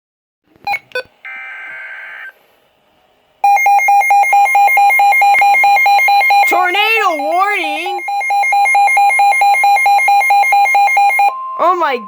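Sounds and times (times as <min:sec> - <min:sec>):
pulsing two-tone attention signal: 0:03.5 - 0:12.0.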